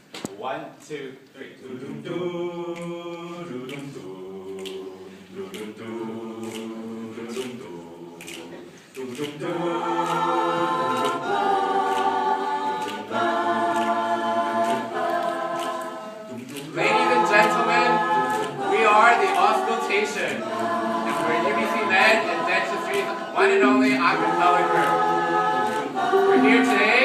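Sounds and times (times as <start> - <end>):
vocal group singing in harmony: 1.6 - 27.0
regular clicks: 8.2 - 9.5.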